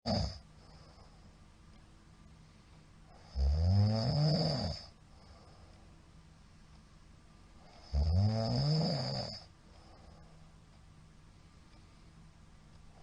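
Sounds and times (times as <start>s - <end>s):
man snoring loudly: 0.1s - 0.4s, 3.2s - 4.9s, 7.8s - 9.5s.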